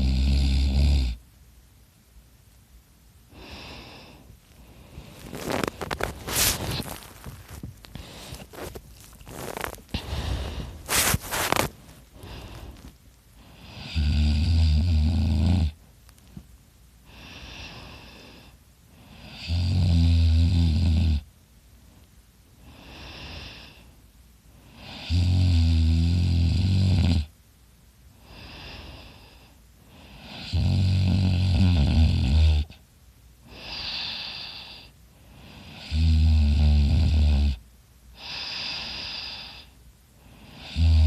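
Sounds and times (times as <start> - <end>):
man snoring loudly: 0.0 - 1.2, 13.6 - 15.8, 19.2 - 21.2, 24.8 - 27.3, 30.2 - 32.8, 35.6 - 37.6, 40.5 - 41.0
soft breaths: 3.3 - 14.2, 15.7 - 19.5, 21.7 - 25.1, 28.1 - 30.5, 32.6 - 35.9, 38.1 - 40.9.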